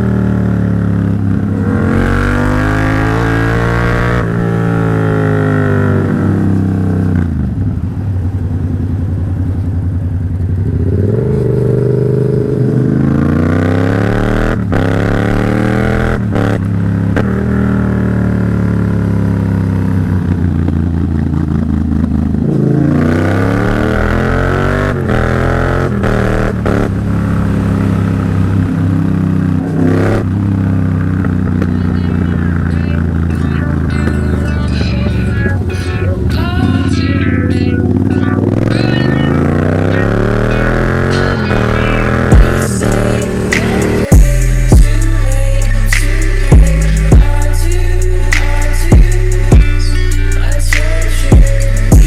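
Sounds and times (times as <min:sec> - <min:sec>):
motorcycle engine revving: 0:00.0 - 0:52.0
exhaust cracks: 0:20.1 - 0:37.2, 0:38.0 - 0:52.0.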